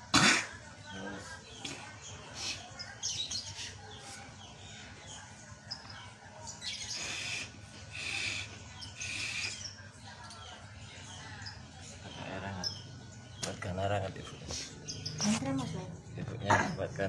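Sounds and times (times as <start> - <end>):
small birds chirping: 0.0 - 17.0.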